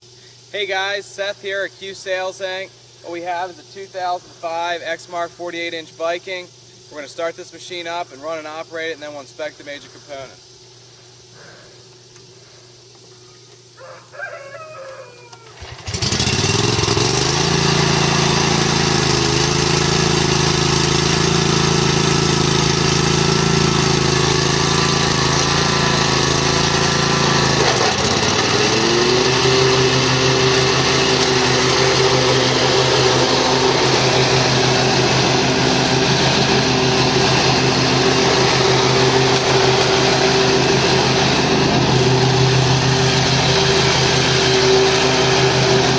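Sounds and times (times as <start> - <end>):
lawn mower engine running: 15.4 - 45.9.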